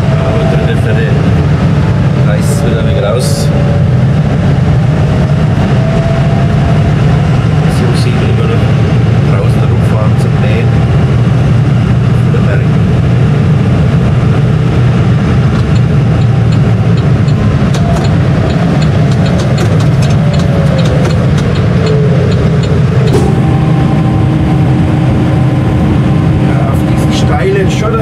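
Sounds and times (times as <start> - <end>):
steady tone: 0.0 - 28.0
tractor engine running: 0.0 - 28.0
clicks and rattles: 15.5 - 23.2.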